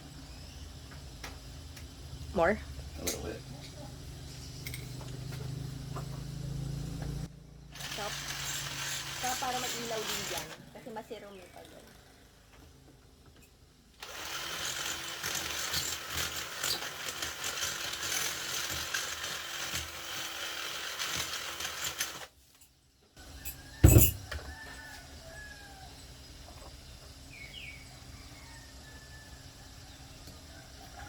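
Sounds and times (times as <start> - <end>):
electric drill boring into wall: 7.7 - 10.7, 14.0 - 22.3.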